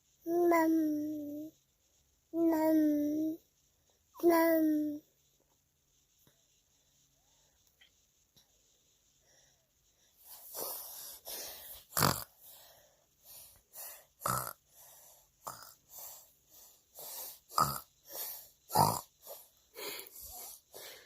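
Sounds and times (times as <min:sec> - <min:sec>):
child snorting grunts: 0:10.4 - 0:12.6, 0:14.0 - 0:14.6, 0:15.4 - 0:16.2, 0:17.0 - 0:20.9.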